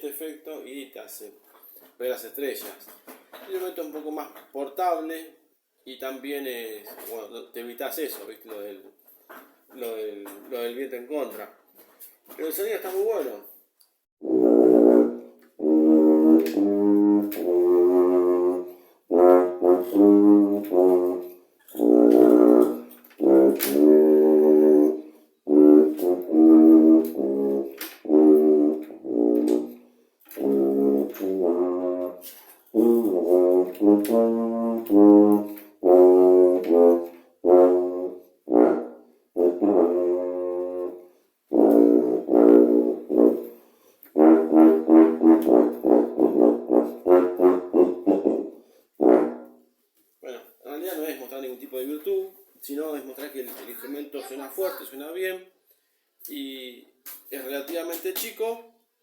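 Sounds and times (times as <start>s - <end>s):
tuba melody: 14.2s - 49.8s.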